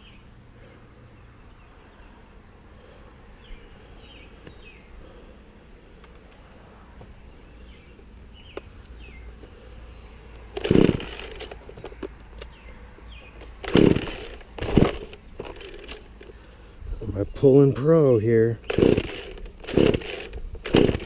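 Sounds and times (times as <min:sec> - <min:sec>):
chainsaw starter cord pulled: 0:10.4 - 0:12.5, 0:13.2 - 0:16.4, 0:18.6 - 0:21.0.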